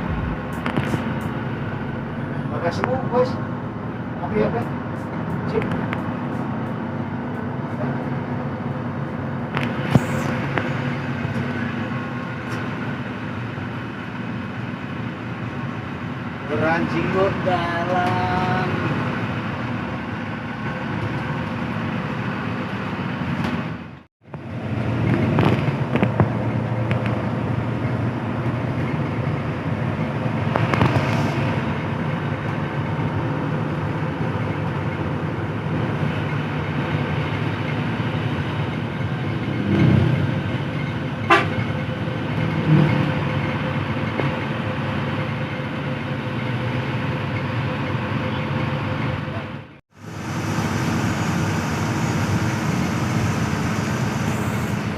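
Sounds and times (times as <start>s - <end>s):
bus diesel engine: 0.0s - 54.9s
road noise: 0.0s - 54.9s
horn toot: 41.3s - 41.6s.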